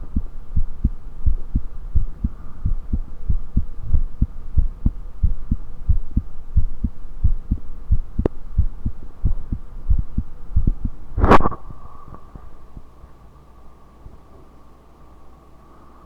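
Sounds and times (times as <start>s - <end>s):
heartbeat thumps: 0.0s - 11.4s
faint hum: 0.0s - 16.0s.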